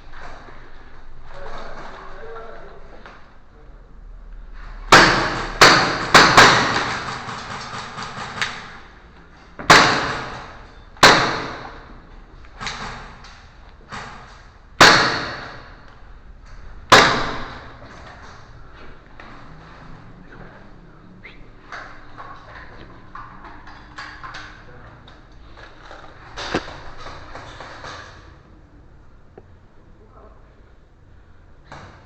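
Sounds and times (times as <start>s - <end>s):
sharp echoing bangs: 4.9s - 9.0s, 9.6s - 12.0s, 13.9s - 15.9s, 16.6s - 18.3s.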